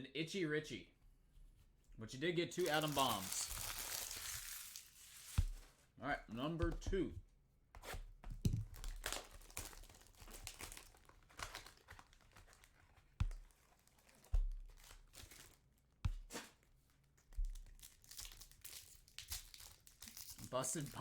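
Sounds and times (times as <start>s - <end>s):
card wrappers tearing and crinkling: 2.6s - 5.7s, 8.6s - 15.7s, 16.3s - 21.0s.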